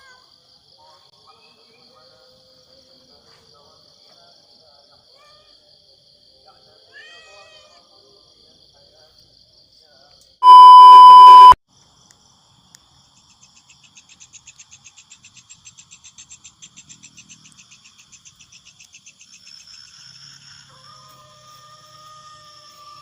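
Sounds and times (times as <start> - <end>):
night insects chirping: 0.0 - 10.4, 11.7 - 23.0
electronic beep tone: 10.4 - 11.6.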